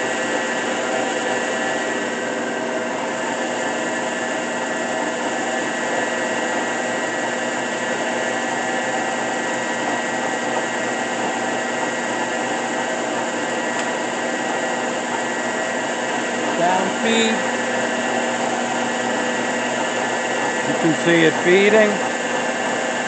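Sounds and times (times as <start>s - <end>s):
grinder mechanical hum: 0.0s - 23.0s
high whine: 16.4s - 17.7s.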